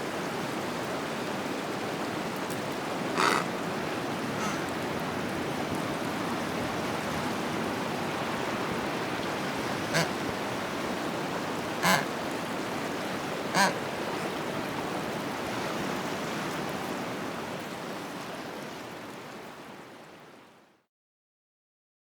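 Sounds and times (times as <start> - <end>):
penguin calls: 3.2 - 3.6, 4.3 - 4.8, 9.8 - 10.3, 11.8 - 12.2, 13.6 - 13.8.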